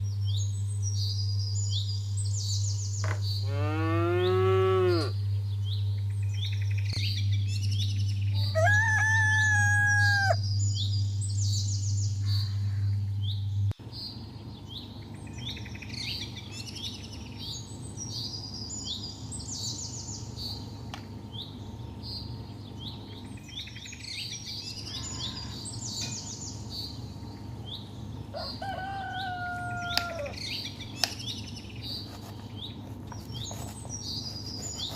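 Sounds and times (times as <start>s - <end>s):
low steady hum: 0.0s - 34.9s
cow mooing: 3.4s - 5.2s
small birds chirping: 4.2s - 34.9s
long animal calls: 8.6s - 10.4s.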